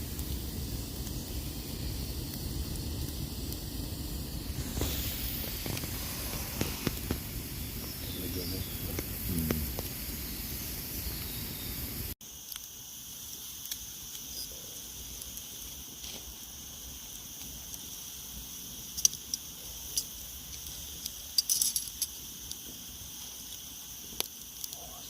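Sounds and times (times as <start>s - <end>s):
meat sizzling on a grill: 0.0s - 25.0s
sharp pops and crackles: 0.0s - 25.0s.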